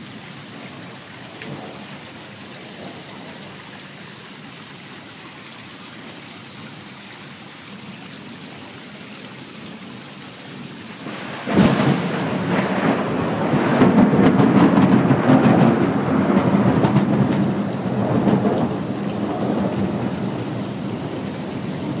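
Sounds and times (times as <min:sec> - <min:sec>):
steady rain: 0:00.0 - 0:22.0
thunderclap and rolling thunder: 0:01.4 - 0:01.9, 0:02.6 - 0:03.6, 0:11.0 - 0:22.0.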